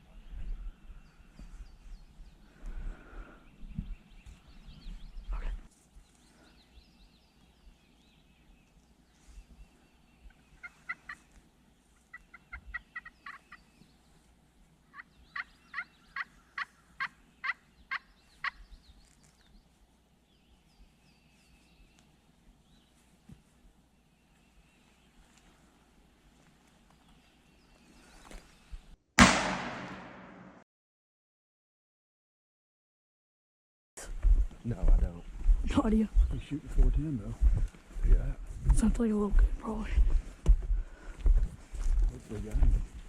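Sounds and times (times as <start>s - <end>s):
wild turkey calling: 10.2s - 13.7s, 14.9s - 18.7s.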